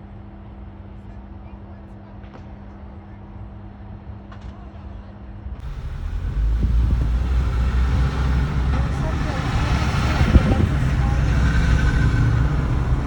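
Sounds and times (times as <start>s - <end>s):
low steady engine hum: 0.0s - 13.0s
landing jet rumble: 5.6s - 13.0s.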